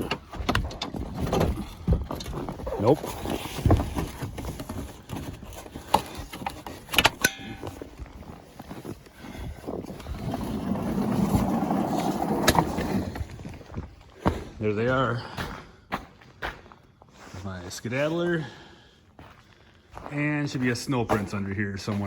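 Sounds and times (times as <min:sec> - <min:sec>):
ringing metal clank: 0:07.2 - 0:07.9
door scraping and rumbling: 0:09.7 - 0:13.8.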